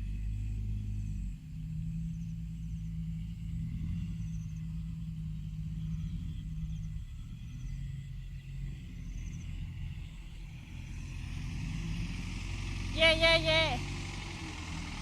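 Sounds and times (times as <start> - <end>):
heavy diesel engine running: 8.3 - 15.0.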